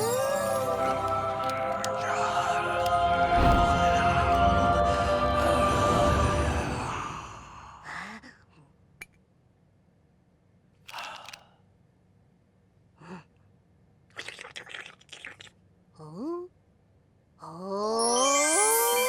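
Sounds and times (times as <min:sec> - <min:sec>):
background music: 0:00.0 - 0:07.4
noisy hits: 0:03.3 - 0:04.3.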